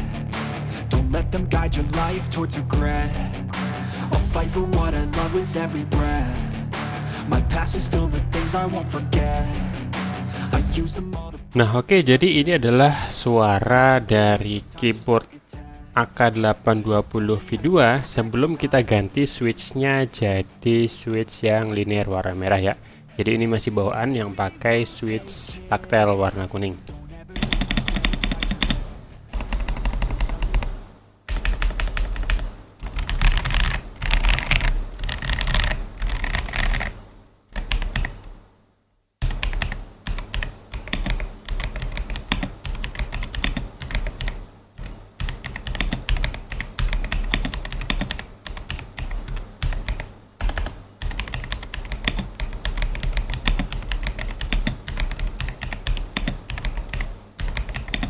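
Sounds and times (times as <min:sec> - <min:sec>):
mechanical keyboard typing: 0:27.4 - 0:28.8, 0:29.4 - 0:37.0, 0:37.6 - 0:38.3, 0:39.2 - 0:58.0.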